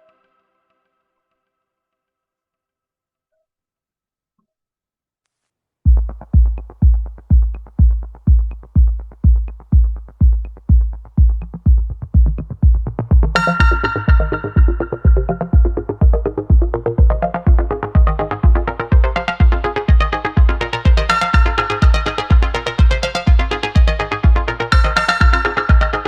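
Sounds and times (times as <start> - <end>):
heavy kick drum: 5.9 - 26.0
bright synth line: 13.4 - 17.3.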